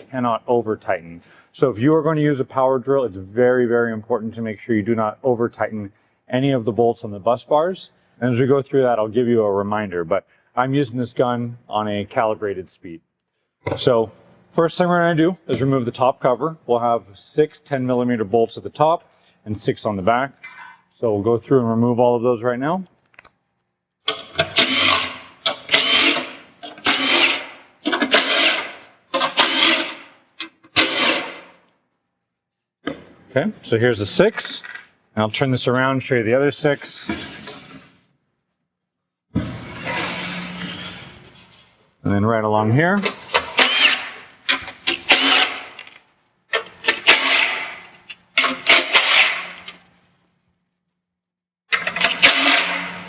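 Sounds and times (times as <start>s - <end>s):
power drill spinning out bolts: 24.1s - 31.6s, 43.0s - 49.8s, 51.7s - 53.0s.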